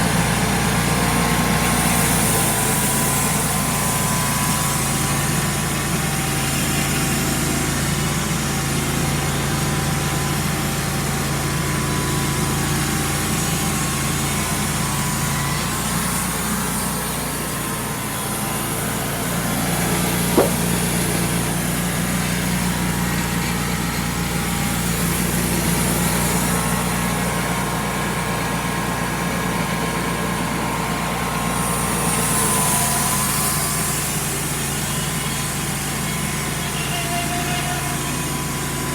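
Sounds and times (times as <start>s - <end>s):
sawmill engine running: 0.0s - 38.9s
saw blade cutting log: 16.4s - 21.8s
sharp click: 20.4s - 20.6s.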